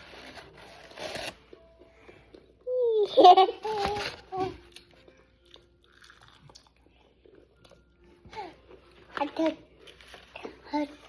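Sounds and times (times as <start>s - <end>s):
chewing crunchy fried food: 4.8s - 7.9s.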